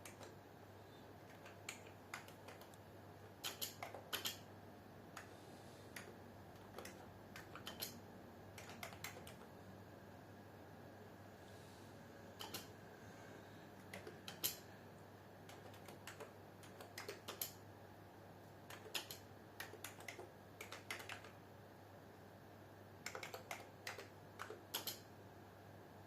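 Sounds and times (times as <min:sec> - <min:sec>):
low steady hum: 0:00.0 - 0:26.0
keyboard key clicks: 0:01.3 - 0:02.8, 0:03.4 - 0:04.4, 0:06.0 - 0:08.0, 0:08.6 - 0:09.4, 0:12.4 - 0:12.7, 0:13.8 - 0:14.6, 0:15.5 - 0:17.6, 0:18.7 - 0:21.4, 0:23.1 - 0:25.0.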